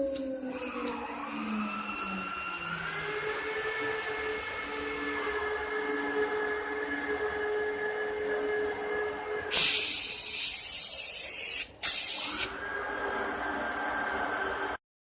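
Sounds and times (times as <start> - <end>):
spindles whining: 0.0 - 11.1, 12.2 - 14.8
loud hiss: 9.5 - 12.5.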